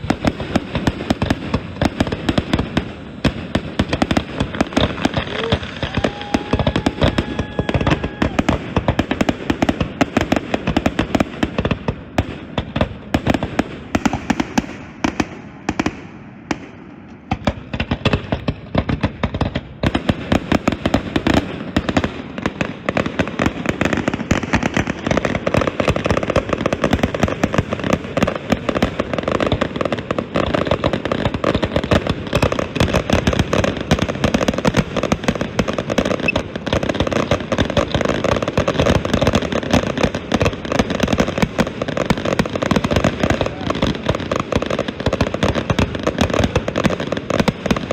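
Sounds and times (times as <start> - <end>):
fireworks bangs and crackling: 0.0 - 47.9
whistling firework shell: 5.1 - 8.6.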